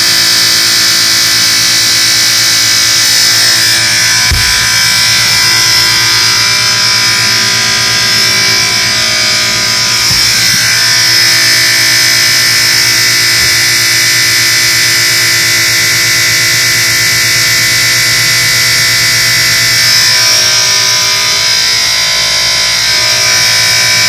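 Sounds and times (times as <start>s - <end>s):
high-pitched ring: 0.0s - 24.0s
dishwasher buzzing: 2.8s - 15.1s.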